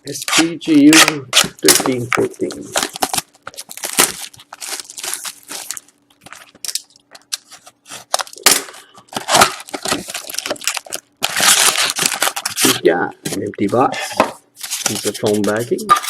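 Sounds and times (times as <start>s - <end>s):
wrapping and cardboard crinkling tearing: 0.2s - 13.8s, 14.6s - 16.0s.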